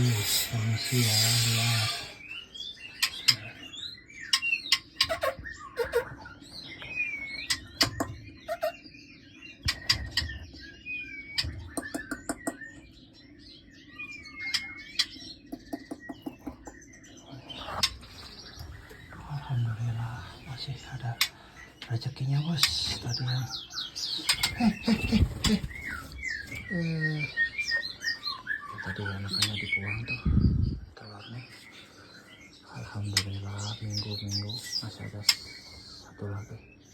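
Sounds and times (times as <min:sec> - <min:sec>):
caged songbirds chirping: 0:00.0 - 0:36.9.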